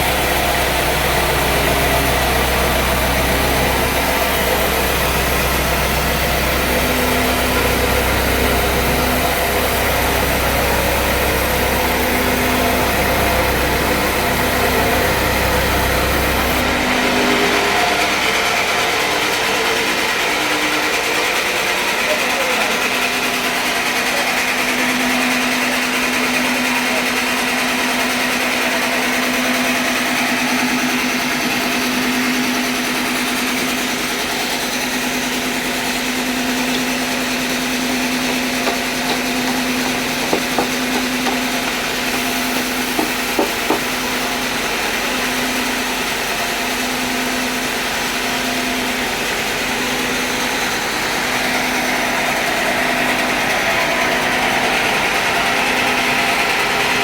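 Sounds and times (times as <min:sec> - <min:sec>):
motor hum: 0:00.0 - 0:20.2, 0:30.8 - 0:44.4
sawmill blade sawing log: 0:00.0 - 0:57.0
short knocks: 0:38.2 - 0:43.9.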